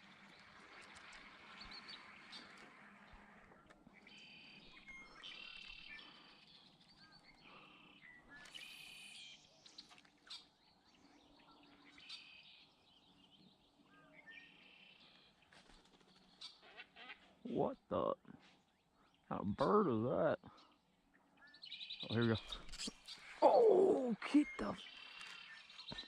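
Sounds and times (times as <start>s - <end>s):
songbird buzzy song phrases: 3.9s - 15.4s, 17.4s - 26.0s.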